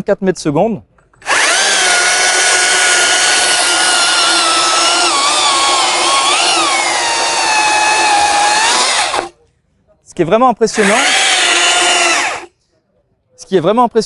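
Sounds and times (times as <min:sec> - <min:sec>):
battery chainsaw whine: 0:01.2 - 0:09.3, 0:10.8 - 0:12.5.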